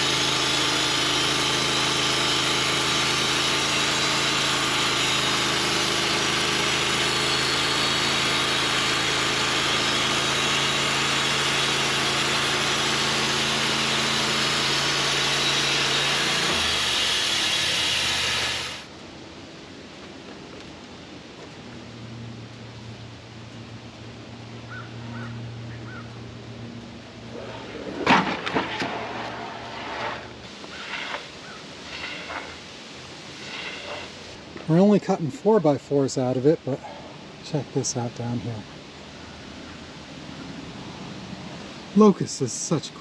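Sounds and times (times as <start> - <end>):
saw cutting log: 0.0 - 18.9, 27.3 - 34.4
sawmill engine: 0.0 - 18.9, 27.0 - 38.4.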